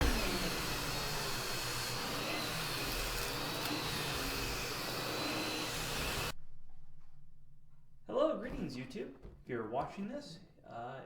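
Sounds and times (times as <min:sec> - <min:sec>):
vacuum cleaner motor running: 0:00.0 - 0:06.4.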